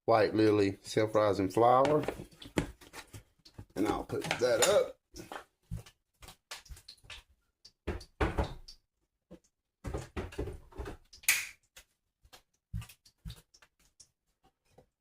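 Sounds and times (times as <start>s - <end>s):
knocks and thuds: 7.8s - 8.6s
cupboard door opening and closing: 7.9s - 8.6s.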